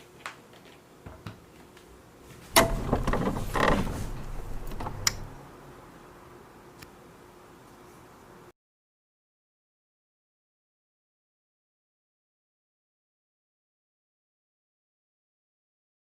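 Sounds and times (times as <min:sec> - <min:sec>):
small clicks: 0:04.6 - 0:05.3.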